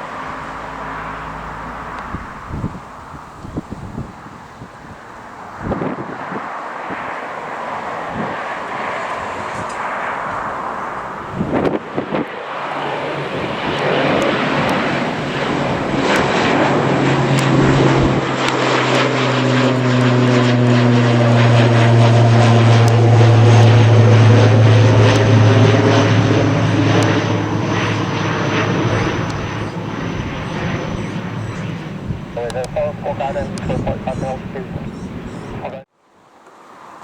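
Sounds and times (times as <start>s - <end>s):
propeller airliner passing: 0.0s - 35.9s.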